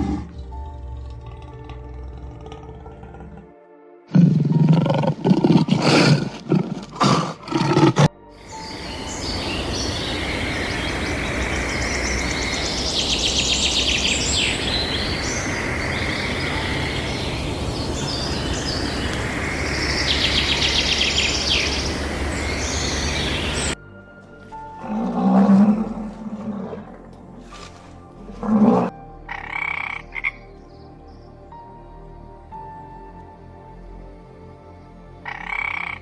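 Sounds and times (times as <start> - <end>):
songbird singing trills: 8.4 - 23.8.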